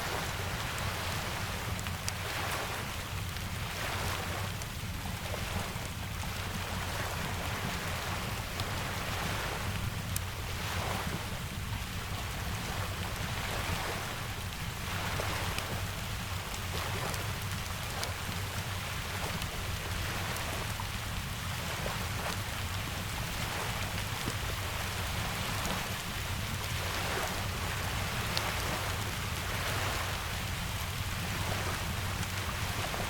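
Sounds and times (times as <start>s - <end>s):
steady rain falling: 0.0s - 33.0s
wood fire crackling: 0.3s - 2.6s.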